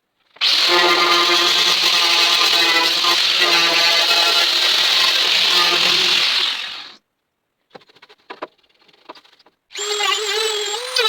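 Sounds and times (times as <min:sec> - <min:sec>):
power drill on sheet steel: 0:00.4 - 0:07.0, 0:09.7 - 0:11.0.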